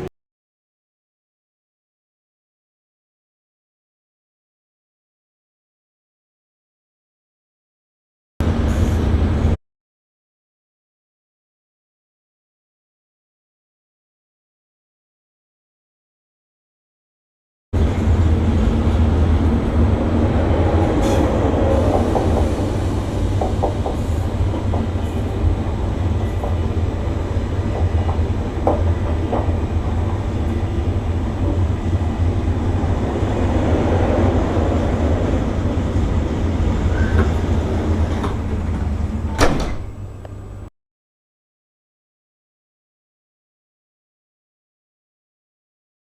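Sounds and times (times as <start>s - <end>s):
train rumbling: 8.4s - 9.6s, 17.8s - 40.7s.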